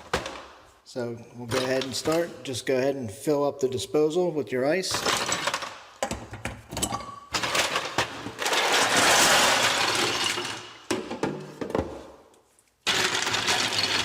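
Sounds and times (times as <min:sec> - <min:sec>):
ice cubes clattering: 0:07.3 - 0:10.8, 0:12.8 - 0:14.0.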